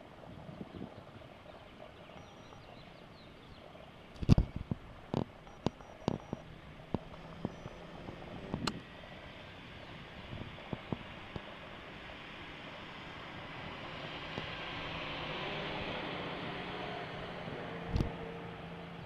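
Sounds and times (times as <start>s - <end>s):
sharp clicks and knocks: 5.1s - 7.8s.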